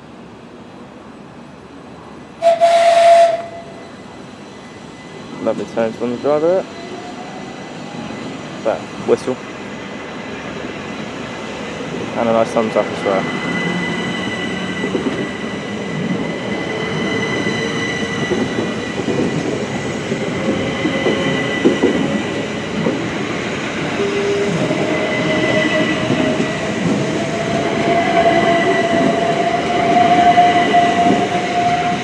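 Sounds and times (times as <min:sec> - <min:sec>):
electric train high whine: 0:00.0 - 0:32.0
train wheels rumbling on rails: 0:02.0 - 0:32.0
train motor whine: 0:02.4 - 0:05.7.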